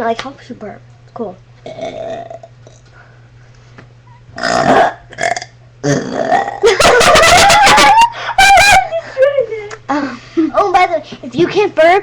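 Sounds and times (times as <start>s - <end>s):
girl burping: 1.7s - 2.5s, 4.4s - 6.7s.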